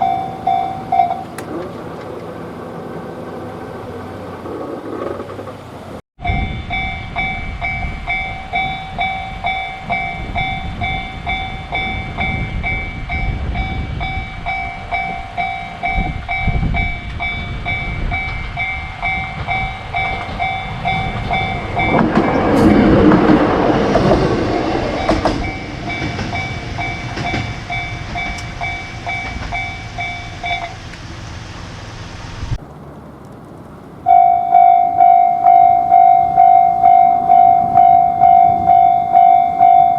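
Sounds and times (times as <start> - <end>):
level crossing bell ringing: 0.0 - 1.4, 6.2 - 22.4, 25.0 - 30.8, 34.1 - 39.9
train rumbling: 0.0 - 39.9.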